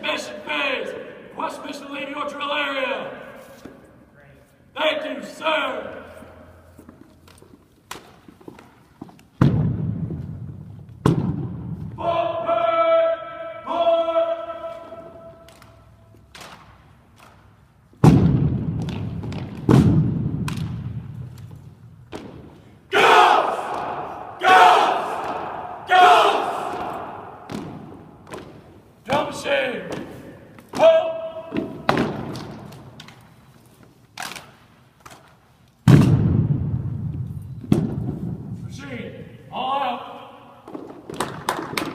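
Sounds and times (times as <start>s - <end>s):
sharp knocks echoing in hall: 7.8s - 33.5s, 34.2s - 39.4s, 40.3s - 41.9s
loud thuds in unison: 9.4s - 12.0s, 18.0s - 21.2s, 26.5s - 29.3s, 35.8s - 38.6s.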